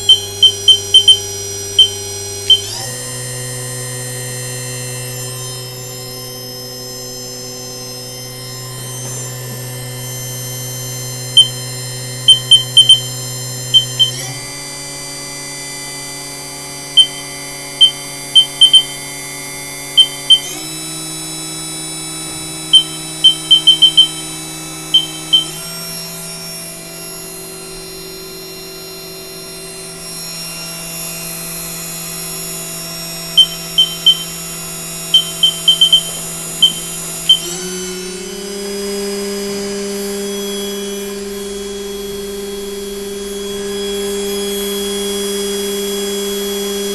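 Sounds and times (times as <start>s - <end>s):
short high beeps: 0.0s - 2.8s, 11.4s - 11.6s, 12.3s - 13.1s, 13.8s - 14.4s, 17.0s - 19.1s, 20.0s - 20.6s, 22.7s - 24.3s, 24.9s - 25.6s, 33.4s - 34.4s, 35.2s - 37.6s
machine spindle whine: 0.0s - 46.9s.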